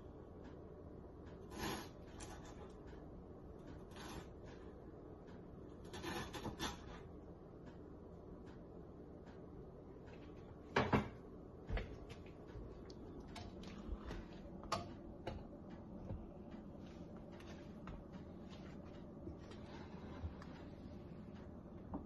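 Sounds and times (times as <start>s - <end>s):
kitchen knocks and clicks: 10.7s - 12.2s, 13.2s - 16.2s.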